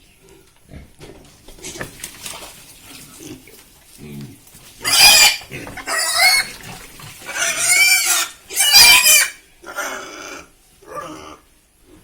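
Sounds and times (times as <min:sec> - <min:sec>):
pig squealing: 0:04.8 - 0:11.4.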